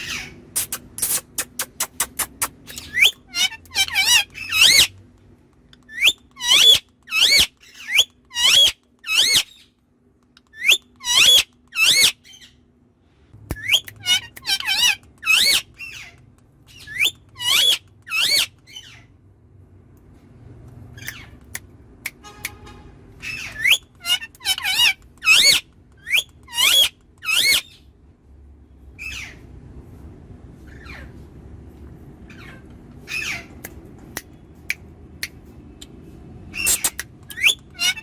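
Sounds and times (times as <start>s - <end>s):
parrot chattering: 0.0s - 4.9s, 5.8s - 9.6s, 10.4s - 12.5s, 13.6s - 19.1s, 23.2s - 27.8s, 36.5s - 38.0s.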